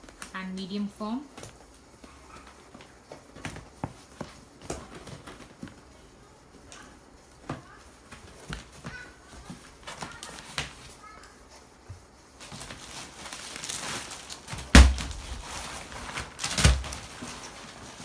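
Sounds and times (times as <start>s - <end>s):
packaging rustling: 1.4s - 6.1s, 12.3s - 18.0s
package set down with deep thump: 14.5s - 15.5s.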